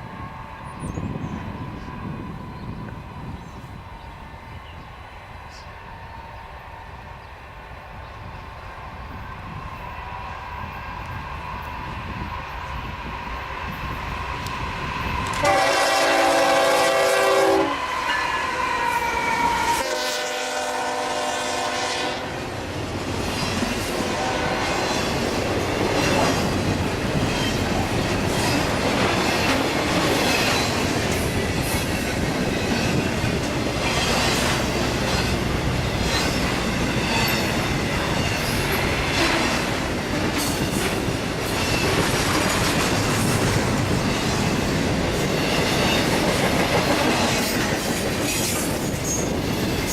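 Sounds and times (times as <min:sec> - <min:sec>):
locomotive horn: 0:15.2 - 0:22.6, 0:24.0 - 0:25.0
train wheels clicking over rail joints: 0:22.8 - 0:49.9.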